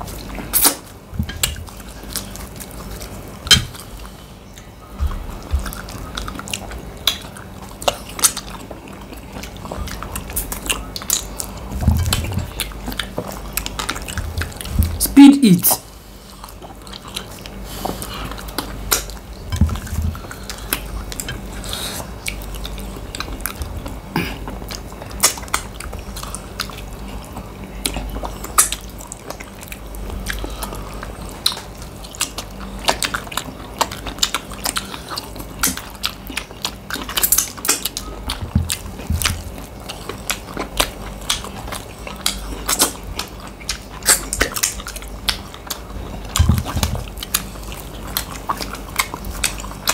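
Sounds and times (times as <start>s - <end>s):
people chewing and biting: 0.0s - 49.9s.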